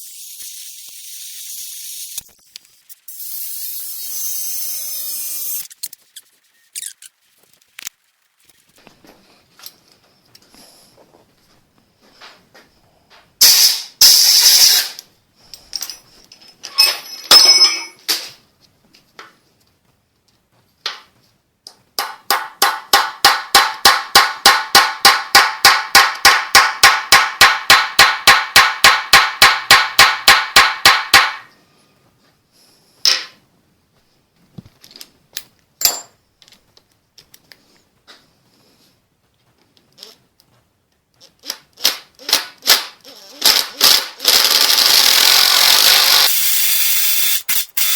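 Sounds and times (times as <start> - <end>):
harsh bursts of tool noise: 3.0 - 5.8, 13.4 - 15.0, 41.5 - 47.9
rapid metal-on-metal strikes: 22.0 - 31.5.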